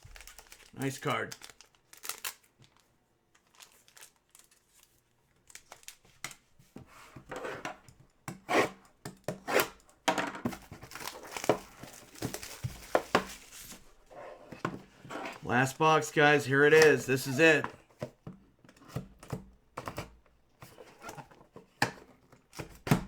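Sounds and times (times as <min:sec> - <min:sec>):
plastic wrapping crinkling and tearing: 0:00.0 - 0:06.4, 0:10.8 - 0:14.0.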